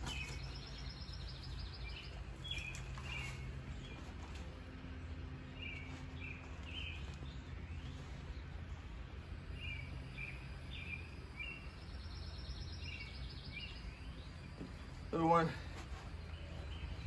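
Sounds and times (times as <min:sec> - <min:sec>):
bird chirping: 0:00.0 - 0:04.1, 0:05.5 - 0:08.6, 0:09.5 - 0:15.4.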